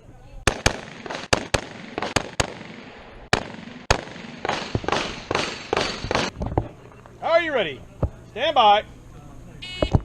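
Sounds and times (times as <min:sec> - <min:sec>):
rifle shots echoing: 0:00.4 - 0:06.9.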